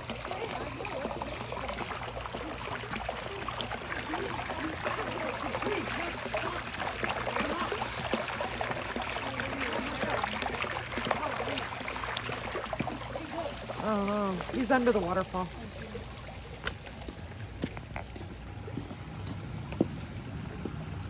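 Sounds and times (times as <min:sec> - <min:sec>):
waterfall splashing into pool: 0:00.0 - 0:16.3.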